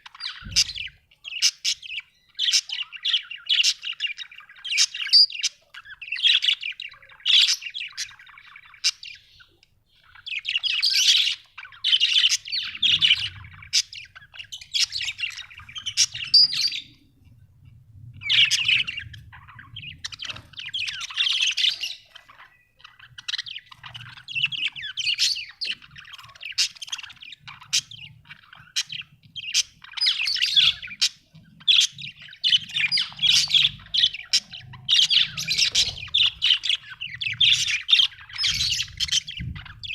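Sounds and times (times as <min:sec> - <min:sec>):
budgerigars chirping and warbling: 0:00.0 - 0:39.9.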